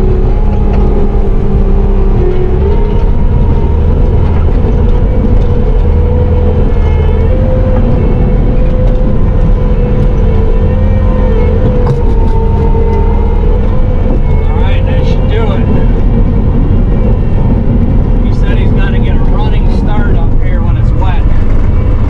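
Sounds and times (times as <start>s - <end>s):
engine whine: 0.0s - 22.0s
track loader diesel engine: 0.0s - 22.0s.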